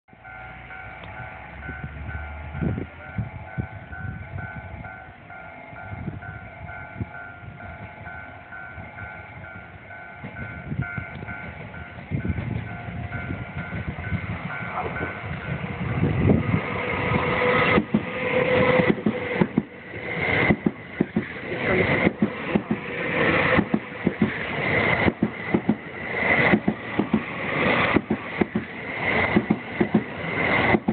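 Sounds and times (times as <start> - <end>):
train running rumble: 0.1 - 30.9
wheels clicking over rail joints: 17.7 - 30.9.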